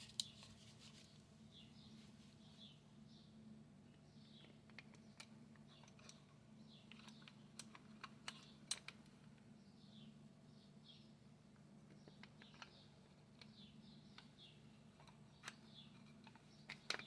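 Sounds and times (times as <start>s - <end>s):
low steady hum: 0.0s - 17.0s
clicks and taps of small parts: 4.4s - 9.4s, 15.0s - 17.0s.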